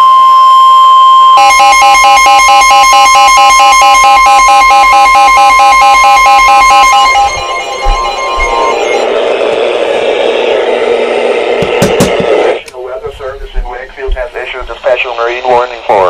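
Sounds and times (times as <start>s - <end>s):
steady single-pitch alert tone: 1.1s - 9.5s
rapid pulsing beep: 1.4s - 9.5s.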